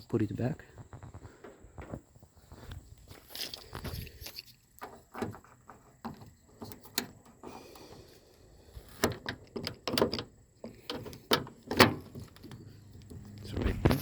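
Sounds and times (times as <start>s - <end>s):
plastic and metal parts tapping: 8.8s - 14.0s
car door lock clicks and knocks: 9.0s - 13.4s.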